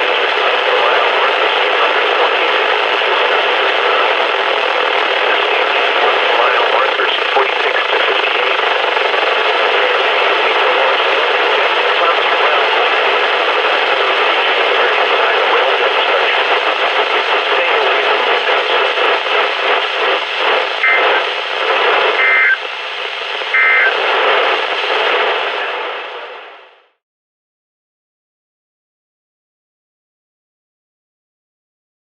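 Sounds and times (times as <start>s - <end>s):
radio static hiss: 0.0s - 26.8s
two-tone digital data bursts: 22.2s - 22.6s, 23.5s - 24.0s.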